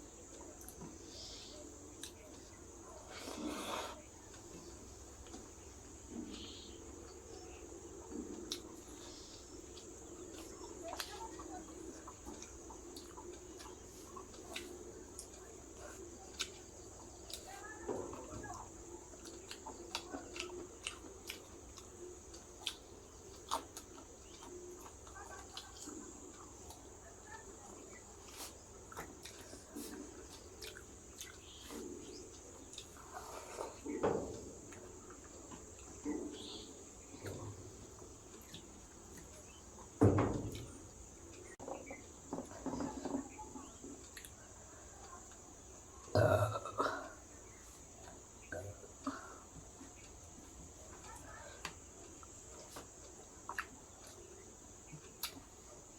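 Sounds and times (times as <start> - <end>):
chewing and mouth clicks: 8.3 - 9.0, 9.6 - 16.7, 19.1 - 26.9, 28.2 - 33.7, 44.0 - 44.4, 52.1 - 55.5.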